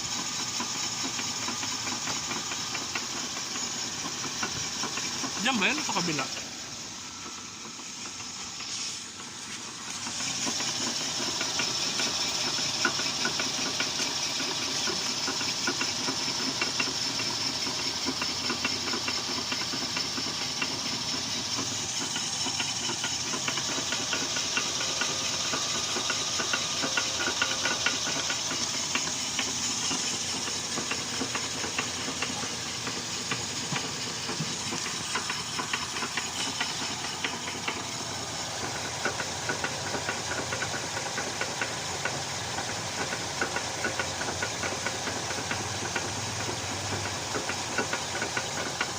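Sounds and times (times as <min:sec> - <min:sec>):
car engine running: 0:00.0 - 0:48.9
fast even knocking tick: 0:10.6 - 0:42.2.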